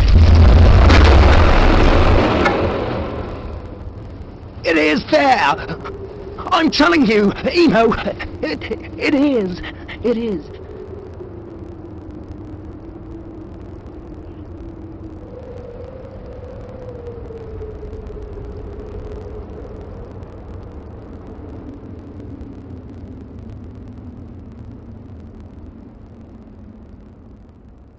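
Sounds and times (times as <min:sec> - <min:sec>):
wavering hum: 0:00.0 - 0:27.4
low rumbling drone: 0:00.0 - 0:27.9.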